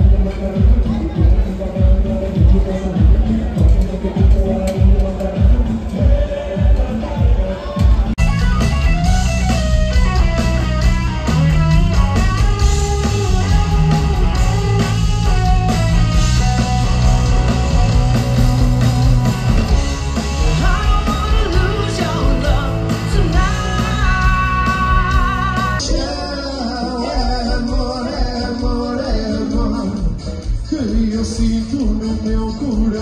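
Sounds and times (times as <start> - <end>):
bass line: 0.0 - 33.0
guitar: 0.0 - 33.0
person singing: 20.2 - 33.0.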